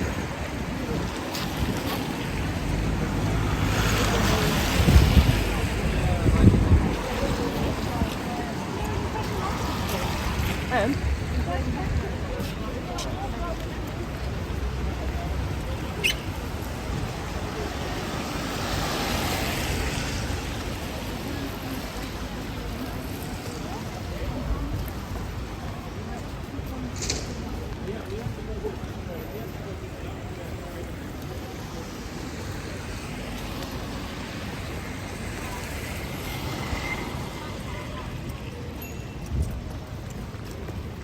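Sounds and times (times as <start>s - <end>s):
tyres hissing on wet road: 0.0s - 11.4s, 15.8s - 25.7s, 30.1s - 37.9s.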